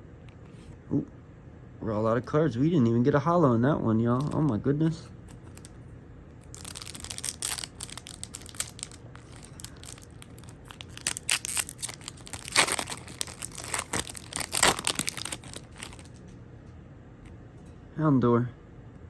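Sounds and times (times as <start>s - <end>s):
foil wrapper crinkling and tearing: 5.1s - 5.8s, 6.4s - 16.2s.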